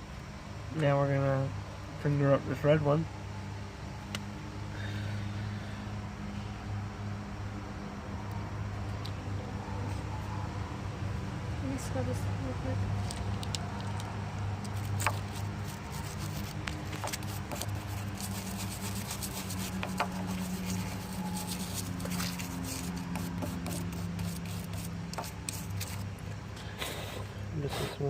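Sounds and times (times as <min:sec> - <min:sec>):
steady low hum: 0:00.0 - 0:28.0
scratchy rubbing on metal: 0:14.6 - 0:26.2.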